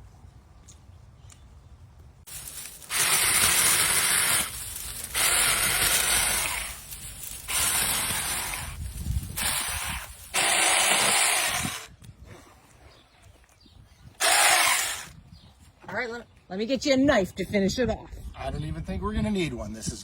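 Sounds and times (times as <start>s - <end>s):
small chainsaw cutting fruit: 2.3s - 12.1s, 14.2s - 15.2s.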